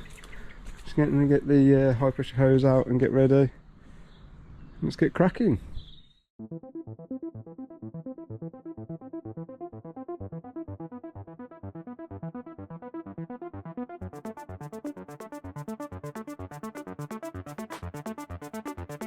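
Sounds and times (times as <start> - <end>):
synth keyboard pulse: 6.4 - 19.0
crisp hi-hat pattern: 14.0 - 19.0.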